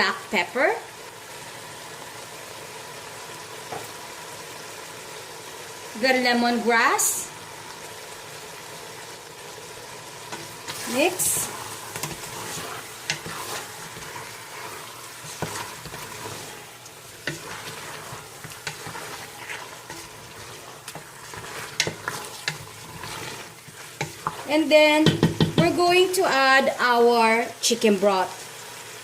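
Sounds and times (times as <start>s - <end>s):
chicken sizzling in a pan: 0.0s - 29.0s
spoon scraping a pan: 10.2s - 25.9s.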